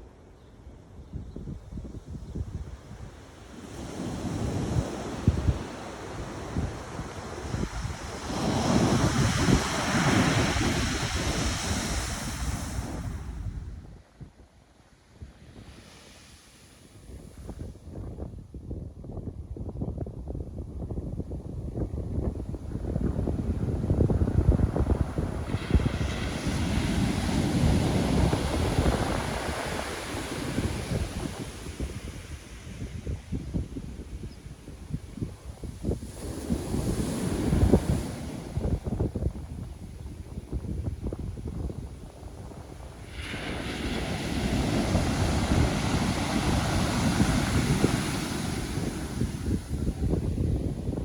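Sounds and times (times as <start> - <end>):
wind buffeting microphone: 0.9 - 14.5, 16.8 - 51.0
wave wash hissing up shore: 2.9 - 13.8, 14.7 - 17.8, 22.6 - 51.0
ocean wave breaking: 3.7 - 13.5, 23.3 - 33.0, 35.8 - 39.2, 42.1 - 50.8
wave breaking: 42.4 - 50.2.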